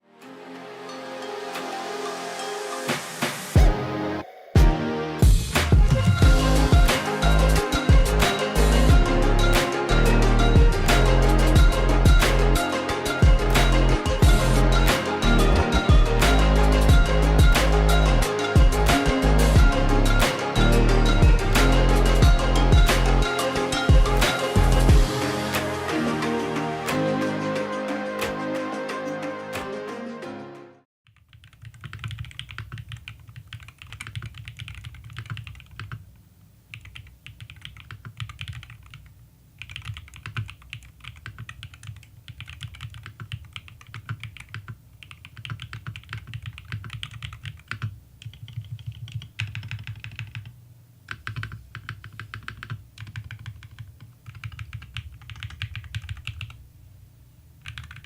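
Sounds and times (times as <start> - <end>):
music: 0.0 - 30.9
fast keyboard typing: 31.1 - 36.0, 36.7 - 56.6, 57.6 - 58.0.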